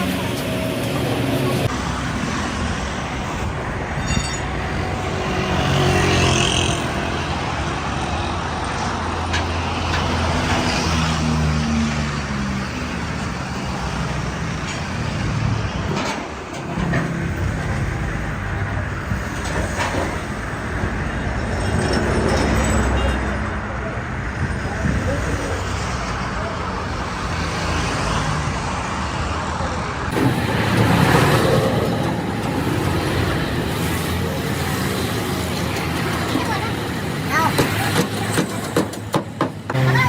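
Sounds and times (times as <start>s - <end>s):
road noise: 0.0s - 40.0s
vehicle engines running: 0.0s - 40.0s.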